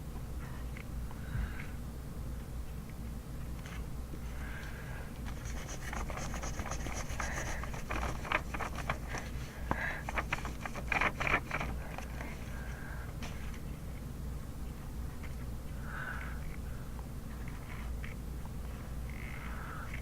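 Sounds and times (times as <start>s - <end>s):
steady low hum: 0.0s - 20.0s
pen scratching on paper: 5.3s - 9.3s.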